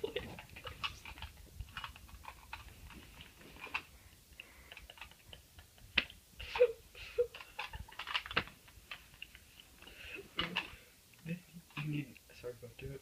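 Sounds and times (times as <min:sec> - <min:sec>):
small objects clicking and tapping: 0:00.0 - 0:06.2, 0:07.4 - 0:09.7.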